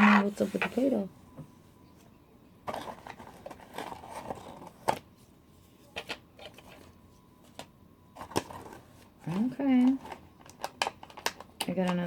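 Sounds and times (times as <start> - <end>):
packaging rustling: 2.6 - 5.1, 6.0 - 12.0.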